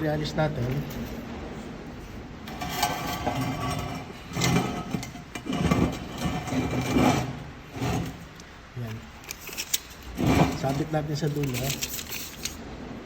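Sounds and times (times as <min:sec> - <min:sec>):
metal stock knocking and scraping: 0:02.5 - 0:08.4, 0:09.5 - 0:11.8.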